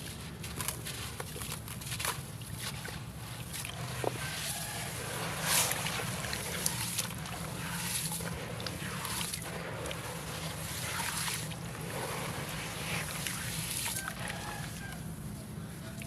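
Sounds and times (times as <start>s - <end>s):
gritty crackles: 0.0s - 15.0s
steady low hum: 0.0s - 16.0s
water sloshing and trickling: 0.0s - 16.0s.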